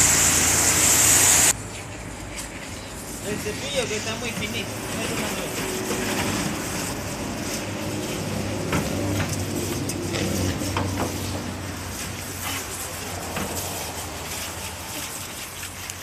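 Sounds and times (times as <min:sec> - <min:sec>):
washer motor hum: 0:00.0 - 0:01.6.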